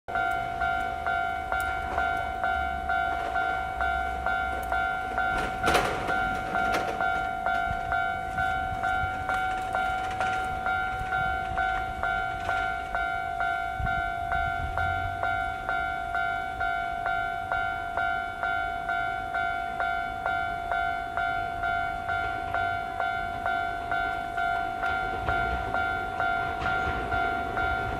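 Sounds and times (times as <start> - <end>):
level crossing bell ringing: 0.1 - 27.9.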